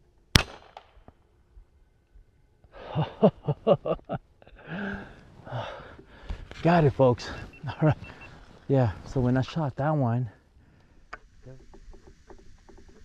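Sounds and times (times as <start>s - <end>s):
air rifle shot: 0.4s - 1.1s.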